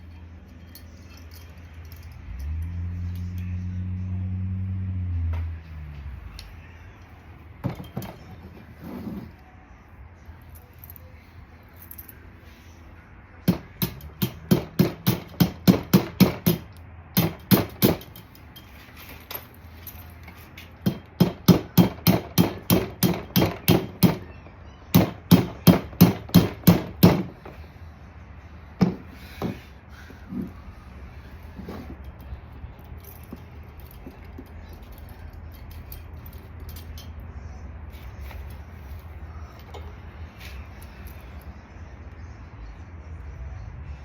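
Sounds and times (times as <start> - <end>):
hammer strikes: 13.4 - 18.1, 20.8 - 24.3, 24.9 - 27.4, 28.8 - 29.6.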